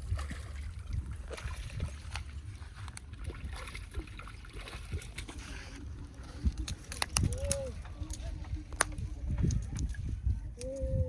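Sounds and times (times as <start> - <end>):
water sloshing and trickling: 0.0 - 11.0.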